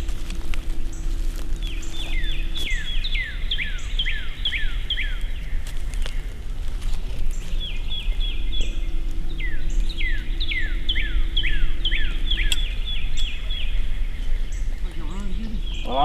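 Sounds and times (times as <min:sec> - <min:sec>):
low steady rumble: 0:00.0 - 0:16.0
songbird whistling: 0:00.9 - 0:05.4, 0:07.6 - 0:14.8.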